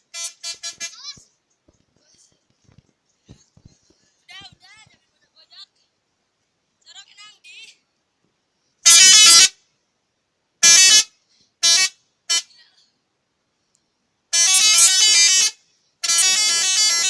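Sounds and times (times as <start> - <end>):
multi-tone musical truck horn: 0.0 - 1.0, 8.8 - 9.6, 10.6 - 12.5, 14.3 - 17.0.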